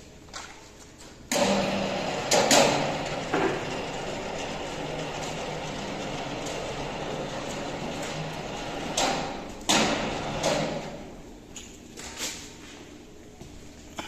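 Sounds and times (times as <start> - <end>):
industrial machinery rushing: 1.4 - 11.1.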